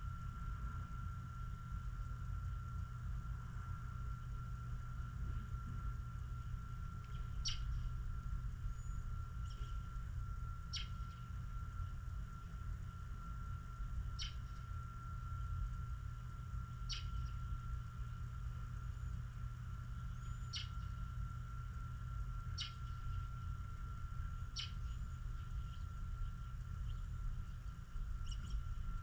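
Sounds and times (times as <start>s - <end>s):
bird chip calls: 7.4s - 7.7s, 14.2s - 14.4s, 16.9s - 17.3s, 20.5s - 20.8s, 22.6s - 22.9s, 24.6s - 24.8s.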